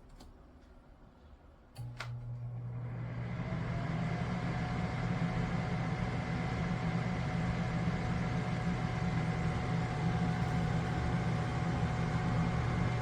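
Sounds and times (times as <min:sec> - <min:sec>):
low machine hum: 0:04.3 - 0:13.0.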